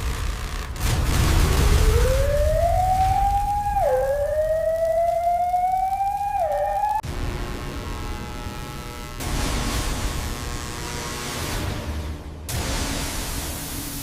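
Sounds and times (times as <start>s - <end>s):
rising electronic whine: 1.0s - 9.2s.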